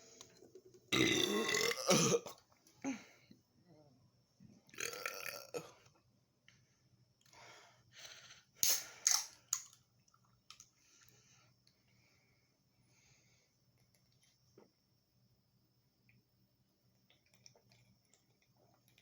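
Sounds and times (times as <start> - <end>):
man burping loudly: 0.9 - 2.4, 4.7 - 5.8.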